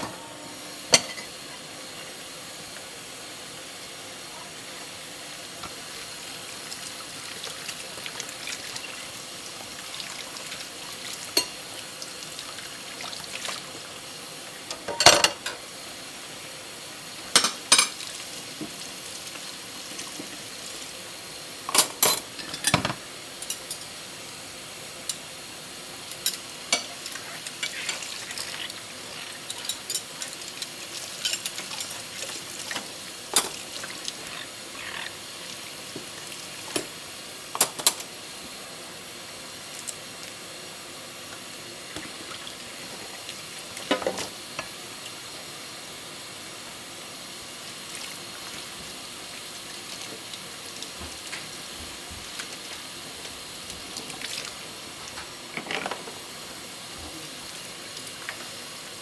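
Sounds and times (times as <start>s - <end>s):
dishes and cutlery clinking: 0.9s - 1.4s, 14.7s - 15.6s, 17.4s - 18.0s, 21.7s - 23.9s, 29.5s - 33.6s, 37.6s - 38.1s.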